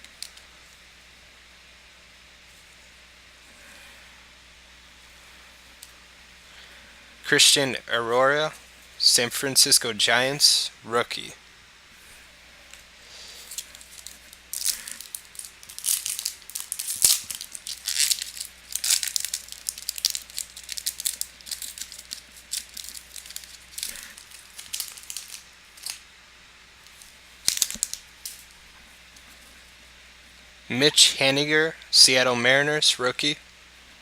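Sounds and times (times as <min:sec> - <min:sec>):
cards being handled: 0:13.3 - 0:26.0, 0:26.8 - 0:28.6
foil wrapper crinkling and tearing: 0:13.3 - 0:26.0, 0:26.9 - 0:28.5.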